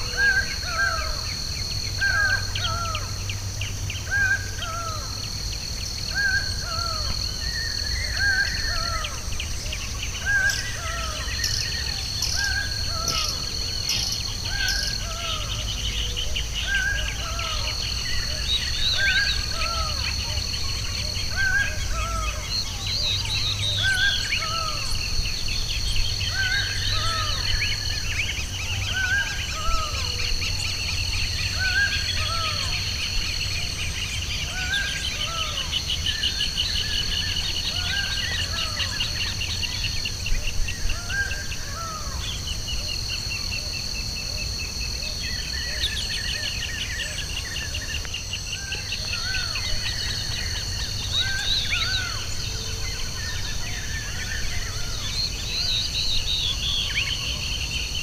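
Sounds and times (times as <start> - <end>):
birds trilling: 0.0 - 58.0.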